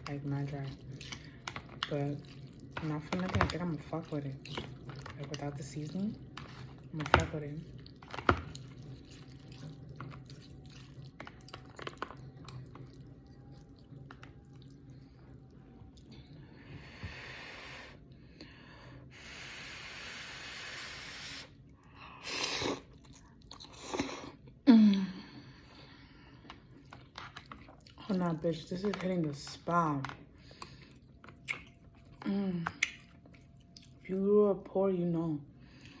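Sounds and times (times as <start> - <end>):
quiet chewing with clicks: 0.0 - 3.6, 7.6 - 16.3, 26.4 - 28.0, 30.0 - 34.0
slurping noodles and broth: 22.2 - 23.0.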